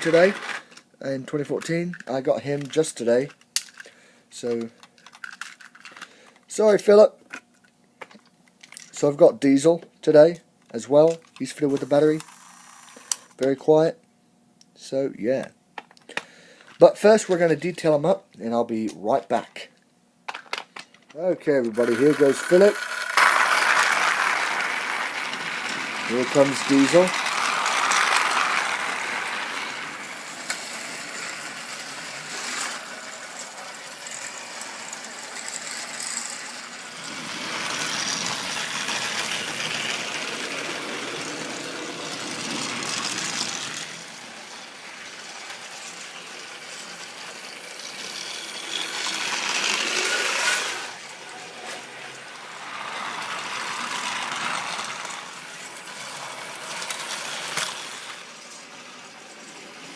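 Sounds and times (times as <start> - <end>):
toy train motors whirring: 0.0 - 0.8, 1.4 - 6.8, 11.0 - 13.5, 20.3 - 59.9
wheels clicking over track joints: 20.3 - 51.0, 52.8 - 58.3.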